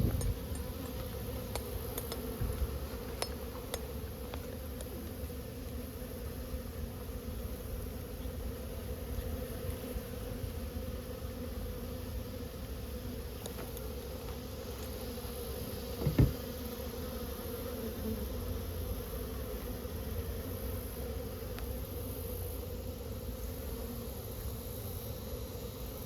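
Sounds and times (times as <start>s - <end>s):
bees buzzing: 0.0s - 26.0s
short thump: 16.0s - 16.5s.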